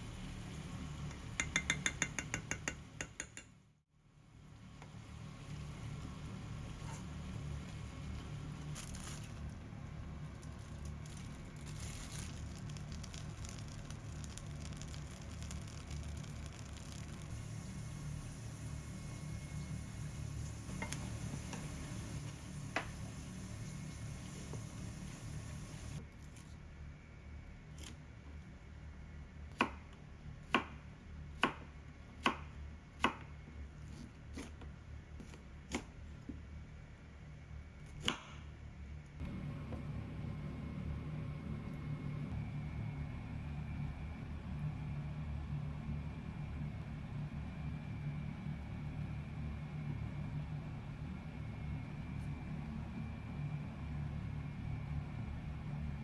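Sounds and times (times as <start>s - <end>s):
food sizzling in a frying pan: 10.9s - 26.0s
steady low hum: 38.7s - 56.0s.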